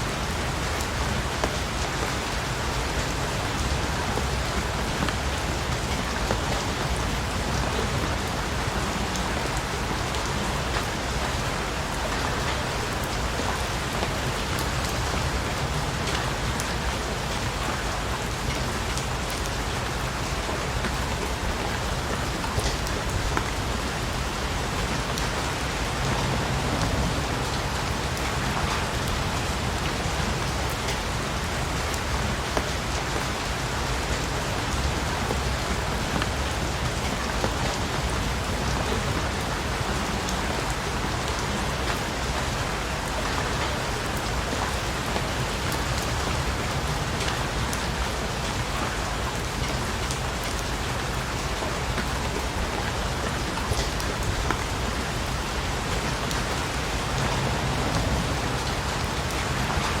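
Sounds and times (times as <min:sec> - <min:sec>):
steady rain falling: 0:00.0 - 1:00.0.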